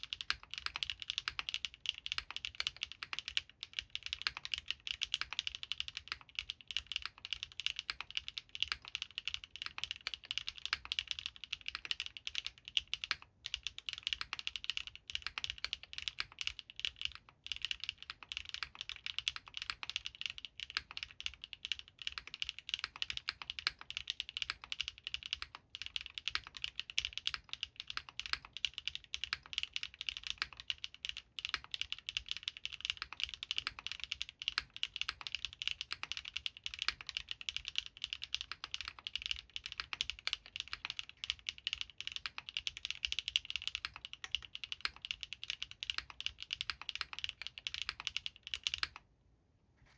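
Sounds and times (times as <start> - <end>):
mechanical keyboard typing: 0.0 - 49.0.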